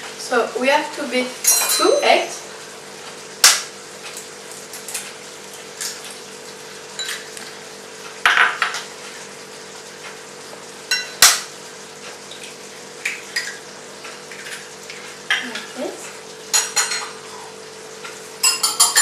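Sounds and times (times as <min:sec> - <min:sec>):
utensils clinking against bowl: 0:01.4 - 0:02.0, 0:07.0 - 0:07.3, 0:16.5 - 0:17.2, 0:18.4 - 0:19.0.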